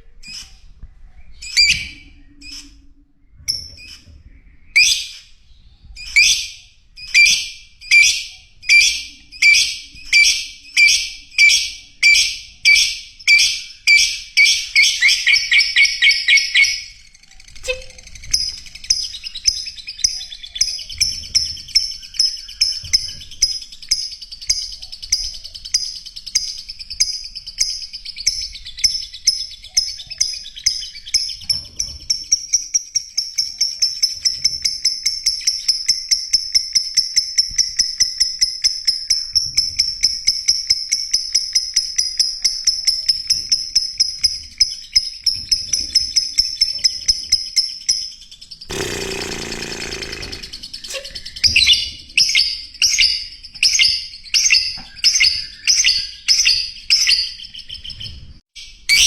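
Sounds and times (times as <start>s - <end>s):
bird high chatter: 48.7s - 51.3s.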